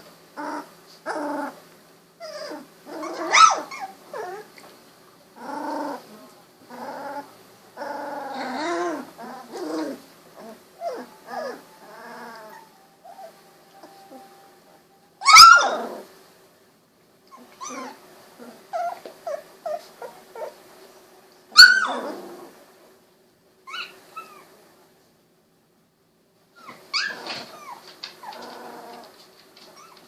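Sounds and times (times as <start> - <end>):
puppies whimpering and squeaking: 2.2 - 4.6, 5.4 - 14.5, 15.2 - 16.1, 17.3 - 20.6, 21.6 - 22.4, 23.7 - 24.5, 26.6 - 30.0.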